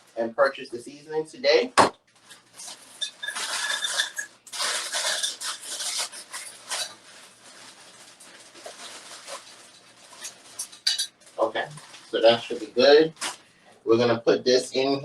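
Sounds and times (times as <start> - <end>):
pots and utensils scraping and knocking: 2.3 - 7.0, 10.2 - 11.2.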